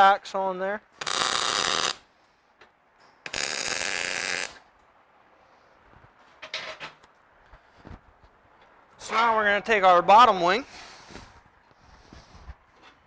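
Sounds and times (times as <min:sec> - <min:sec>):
welding crackle: 0:01.0 - 0:02.0, 0:03.3 - 0:04.6.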